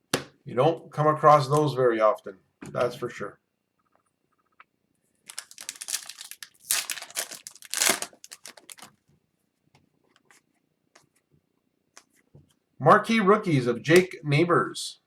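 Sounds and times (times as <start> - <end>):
cards clicking and rustling: 5.3 - 8.9
foil wrapper tearing and crinkling: 5.3 - 8.9.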